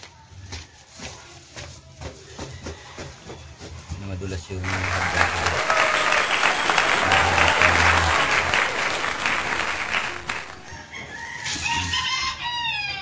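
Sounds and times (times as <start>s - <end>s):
rooster crowing: 4.6s - 13.0s.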